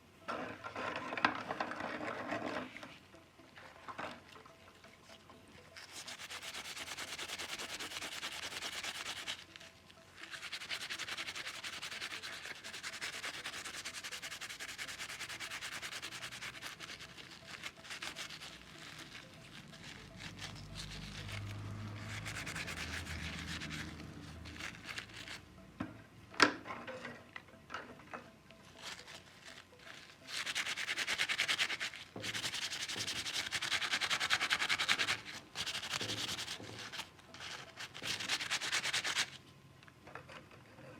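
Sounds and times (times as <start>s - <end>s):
sandpaper rubbing on metal: 5.8s - 9.4s, 10.2s - 25.4s, 30.0s - 39.4s.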